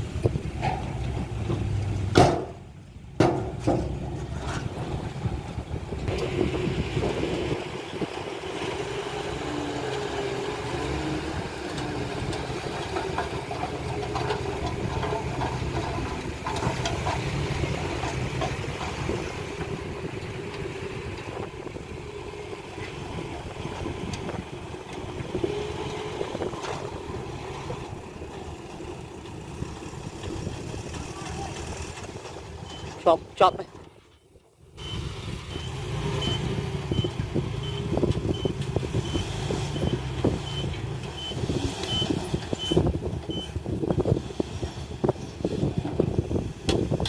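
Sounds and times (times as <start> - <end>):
diesel engine of heavy machinery: 0.0 - 47.0.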